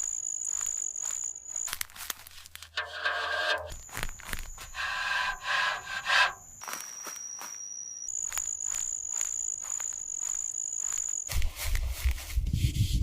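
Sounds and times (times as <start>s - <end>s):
high insect trill: 0.0s - 11.8s
rustling and scraping: 1.1s - 6.9s, 8.8s - 13.0s.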